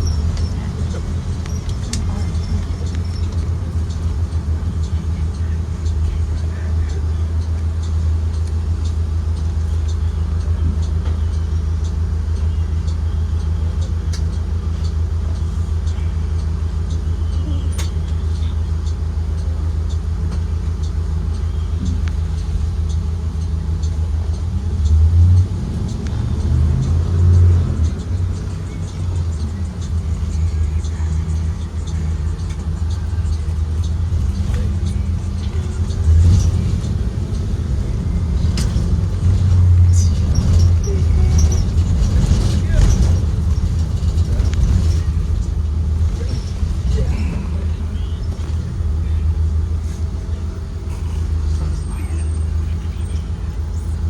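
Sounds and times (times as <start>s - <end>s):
bus engine drone: 0.0s - 54.0s
small rattles and clicks: 32.3s - 47.1s.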